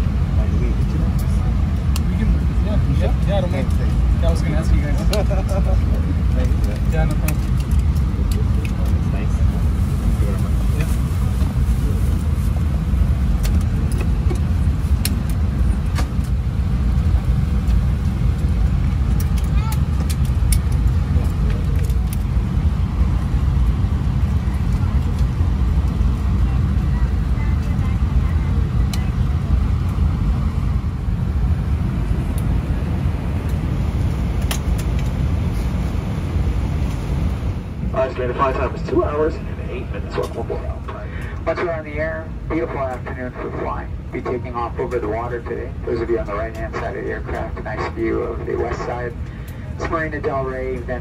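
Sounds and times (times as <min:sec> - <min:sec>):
vehicle interior rumble: 0:00.0 - 0:51.0.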